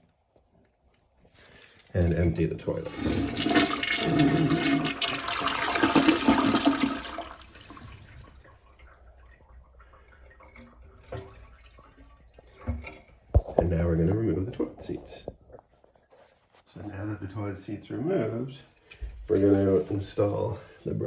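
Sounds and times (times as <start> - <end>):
toilet flushing: 2.6 - 13.2.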